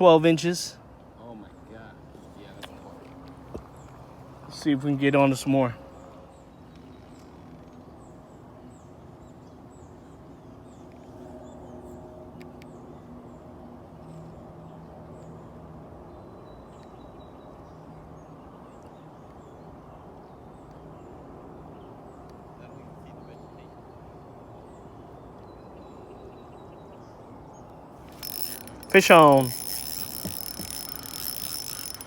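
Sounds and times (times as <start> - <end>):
small bird chirping: 28.1 - 32.0.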